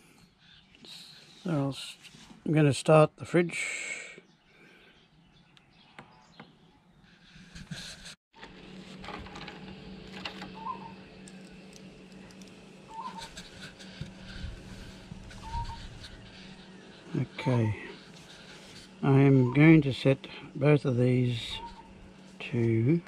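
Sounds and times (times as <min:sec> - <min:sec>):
birds chirping: 0:04.0 - 0:07.4, 0:10.3 - 0:23.0
fridge compressor humming: 0:07.4 - 0:23.0.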